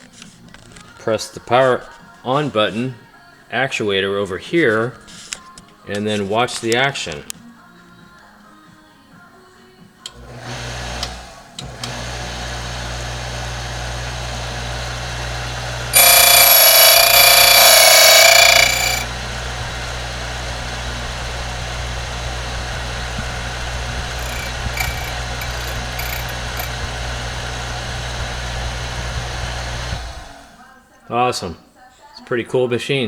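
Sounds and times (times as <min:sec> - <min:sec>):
motor running: 0:14.4 - 0:30.2
cutter whining on key blank: 0:14.5 - 0:30.0.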